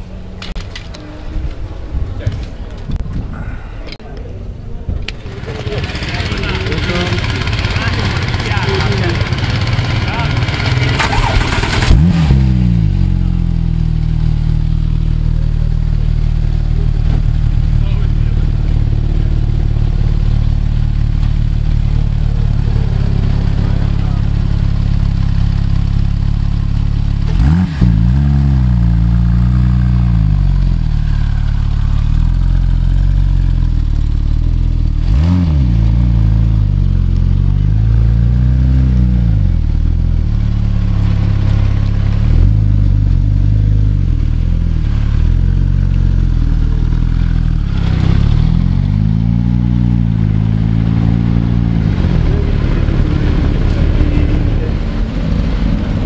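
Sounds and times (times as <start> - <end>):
car engine idling and revving: 4.8 - 56.0.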